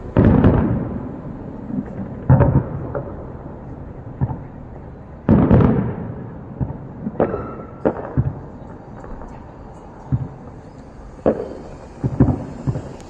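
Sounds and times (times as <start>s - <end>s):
fireworks booms with rumbling echo: 0.0s - 13.0s
small firework bang: 0.2s - 1.0s, 5.3s - 9.4s, 10.1s - 13.0s.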